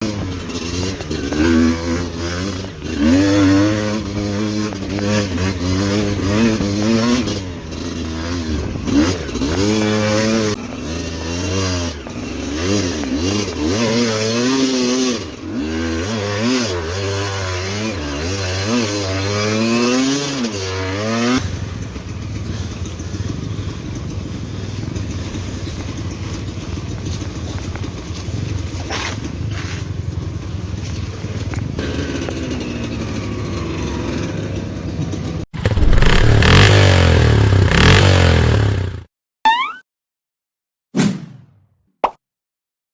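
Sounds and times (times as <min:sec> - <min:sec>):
motorcycle engine revving: 0:00.0 - 0:39.1
steady rushing noise: 0:35.6 - 0:36.7.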